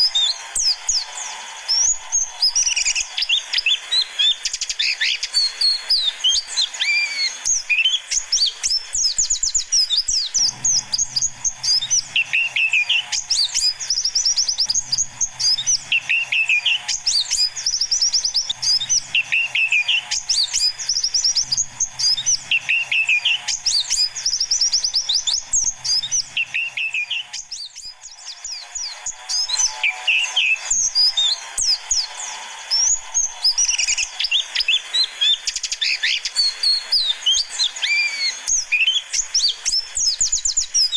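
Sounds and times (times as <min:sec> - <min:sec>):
birds twittering: 0:00.0 - 0:40.9
faint low hum: 0:09.4 - 0:34.2.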